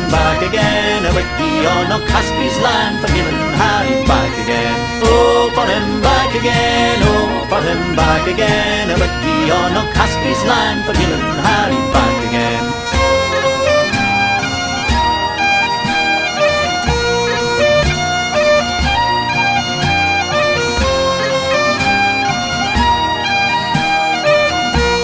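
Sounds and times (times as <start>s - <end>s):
bagpipe melody: 0.0s - 25.0s
steady low beat: 0.1s - 13.1s.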